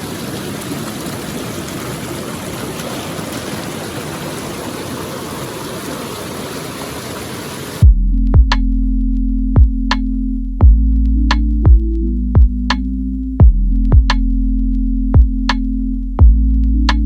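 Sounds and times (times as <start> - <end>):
water rushing over rapids: 0.0 - 7.8.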